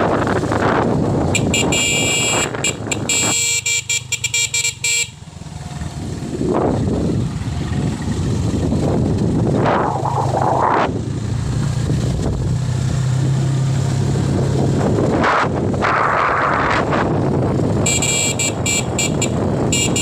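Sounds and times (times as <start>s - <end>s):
wind noise on microphone: 0.0s - 3.4s, 6.0s - 13.4s, 14.0s - 20.0s
motorcycle engine: 0.0s - 20.0s
vehicle horn short toots: 1.4s - 5.2s, 17.8s - 20.0s.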